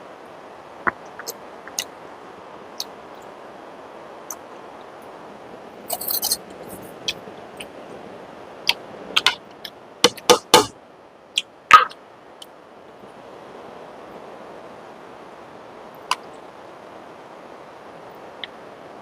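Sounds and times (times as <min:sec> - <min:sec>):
background hiss: 0:00.0 - 0:19.0.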